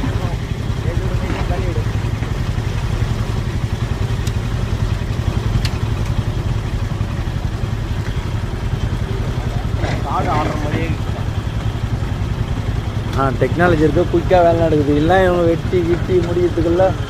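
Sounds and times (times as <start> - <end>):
engine low rumble: 0.0 - 17.0.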